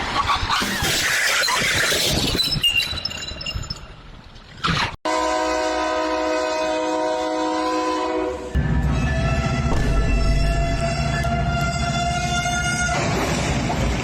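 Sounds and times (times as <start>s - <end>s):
multi-tone horn blast: 5.0s - 13.1s.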